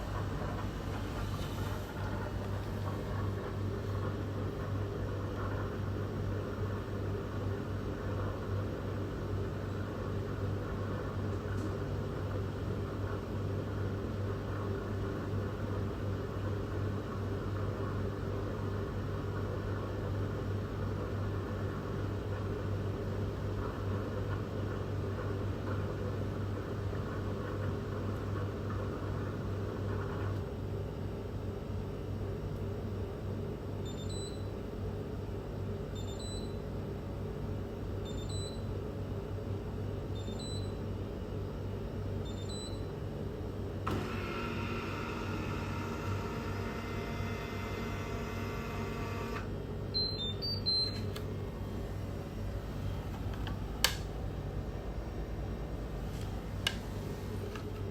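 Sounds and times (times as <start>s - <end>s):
machine humming and hissing: 0.0s - 7.8s, 43.8s - 49.7s.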